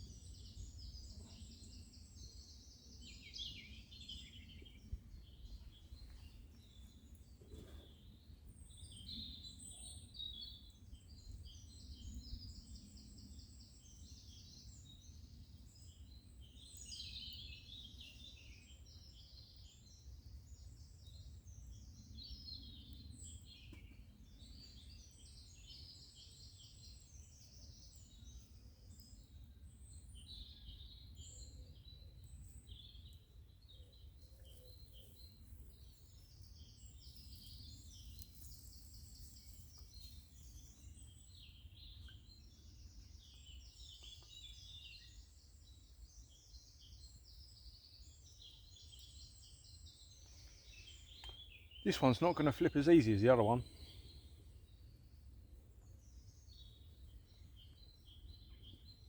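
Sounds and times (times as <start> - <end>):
birds chirping and trilling: 33.9 - 55.1.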